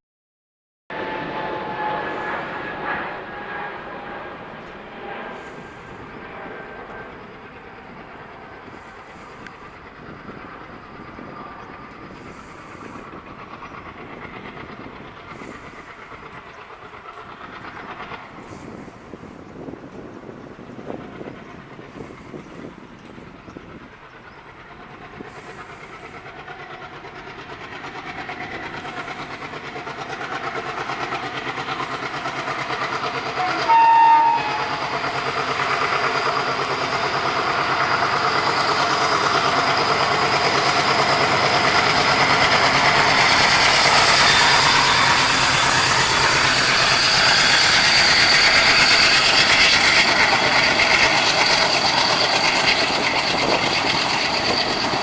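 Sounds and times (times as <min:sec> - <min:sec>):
passenger train running: 0:00.9 - 0:55.0
train horn blast: 0:33.4 - 0:35.0.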